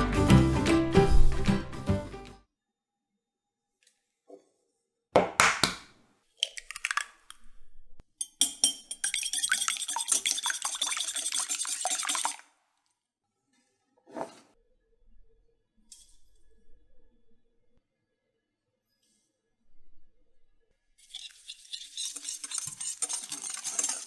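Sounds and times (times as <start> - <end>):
utensils clinking against dishes: 22.0 - 24.0.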